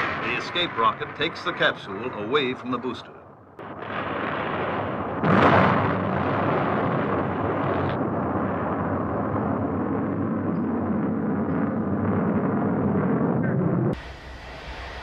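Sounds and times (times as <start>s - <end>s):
loud rocket blast: 0.0s - 2.8s, 3.6s - 15.0s
rocket roar: 0.0s - 15.0s.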